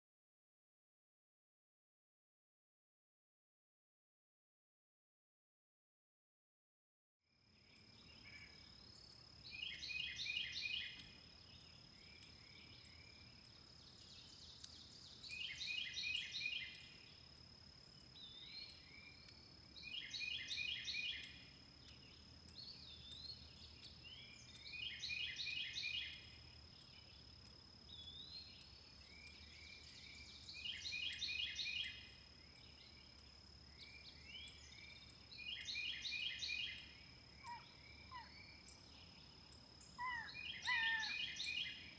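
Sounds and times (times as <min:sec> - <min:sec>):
songbird trilling: 0:07.8 - 0:13.1, 0:13.9 - 0:17.0, 0:18.0 - 0:38.9, 0:39.5 - 0:41.9.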